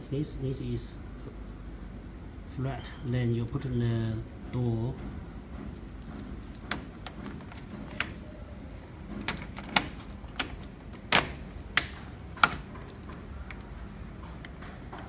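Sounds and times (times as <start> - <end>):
key and door lock clicking: 5.8 - 8.4, 9.0 - 15.0.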